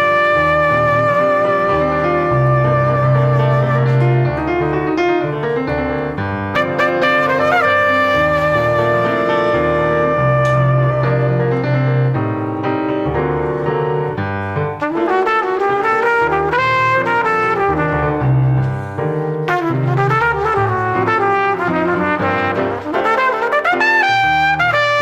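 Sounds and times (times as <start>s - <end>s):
salsa music with brass: 6.6s - 11.0s, 19.5s - 25.0s.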